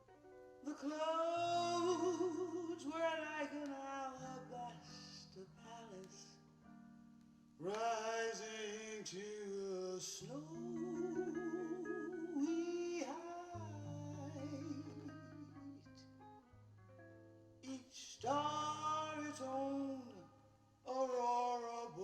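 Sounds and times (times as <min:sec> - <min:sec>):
plucked guitar: 0:00.0 - 0:22.0
person singing: 0:00.6 - 0:06.4, 0:07.6 - 0:16.1, 0:17.6 - 0:20.3, 0:20.9 - 0:22.0.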